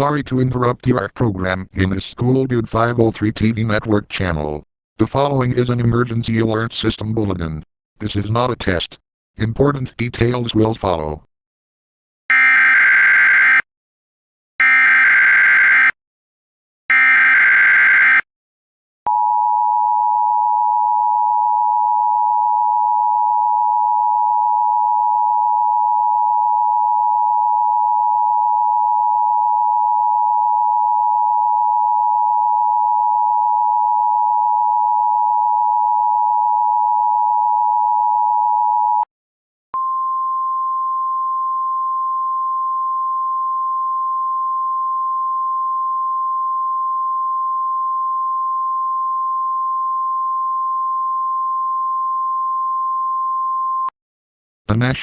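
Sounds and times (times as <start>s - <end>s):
single steady tone: 19.1s - 39.1s, 39.8s - 53.9s.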